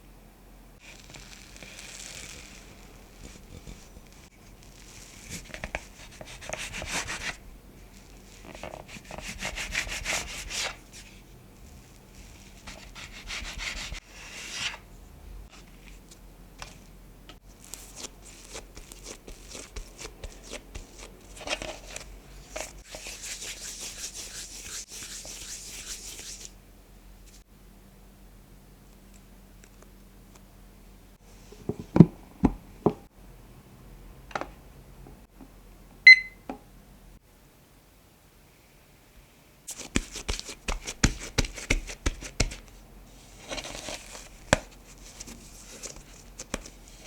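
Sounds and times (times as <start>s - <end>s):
dough rubbing and scraping on surface: 0.8s - 26.6s, 39.7s - 47.0s.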